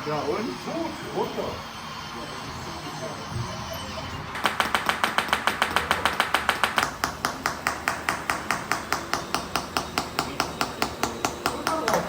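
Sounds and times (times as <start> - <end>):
model machine clicking rapidly: 4.4 - 7.1.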